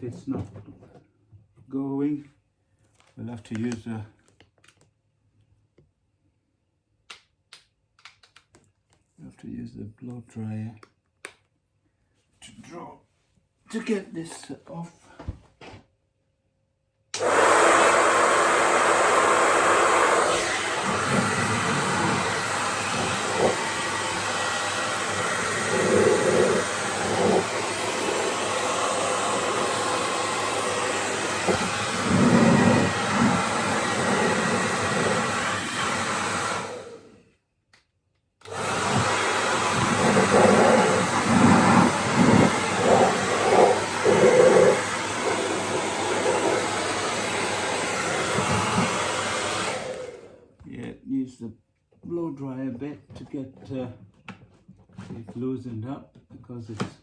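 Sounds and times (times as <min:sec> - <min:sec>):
hair dryer blowing: 0:17.2 - 0:37.2, 0:38.4 - 0:50.5.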